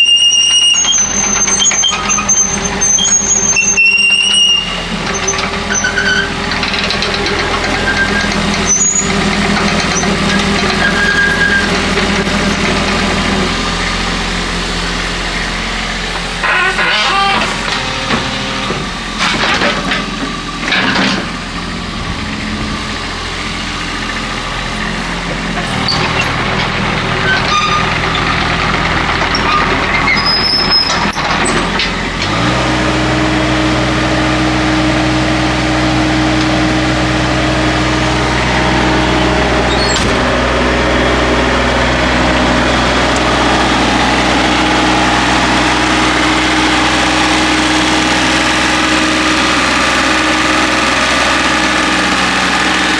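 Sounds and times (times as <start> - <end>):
excavator diesel engine running: 0.0 - 52.9
knocks and clanks: 16.4 - 23.2.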